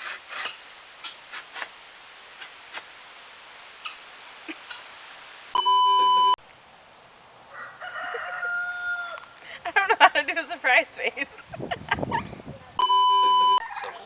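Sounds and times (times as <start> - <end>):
low hiss: 0.0 - 7.4
loud electronic beep: 5.6 - 6.4, 12.8 - 13.6.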